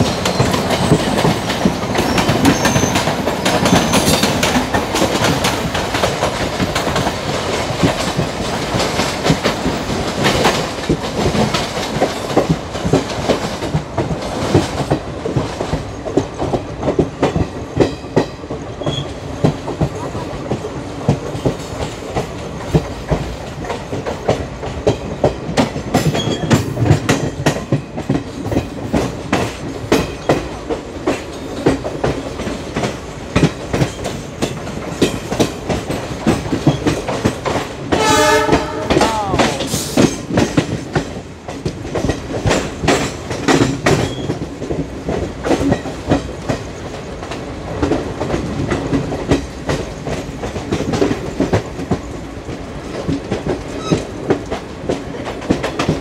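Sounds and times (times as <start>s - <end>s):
train wheels clacking over rail joints: 0.0s - 56.0s
diesel train horn: 37.9s - 39.8s.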